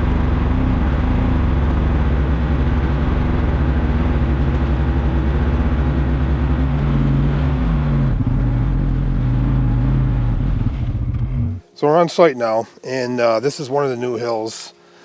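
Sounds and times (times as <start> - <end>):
vehicle engine running: 0.0 - 11.7.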